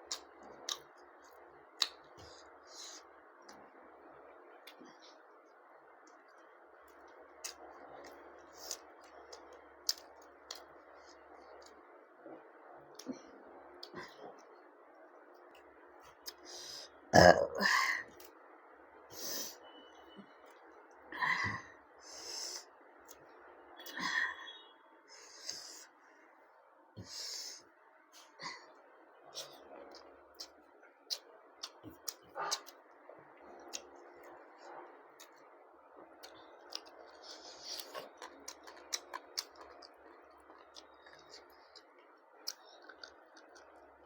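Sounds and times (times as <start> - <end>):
person chewing: 0.0 - 3.0, 7.0 - 11.8, 29.3 - 32.8, 36.2 - 44.0.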